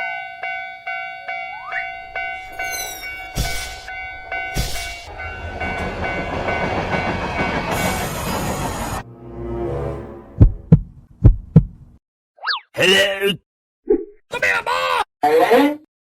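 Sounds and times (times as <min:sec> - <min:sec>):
railroad crossing bell ringing: 0:00.0 - 0:08.7
train rumbling past: 0:01.7 - 0:11.2.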